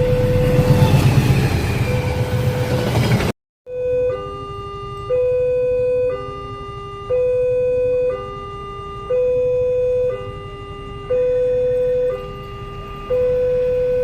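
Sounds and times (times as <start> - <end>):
electronic two-tone warning signal: 0.0 - 2.9, 3.7 - 14.0
low rumble: 0.0 - 3.3.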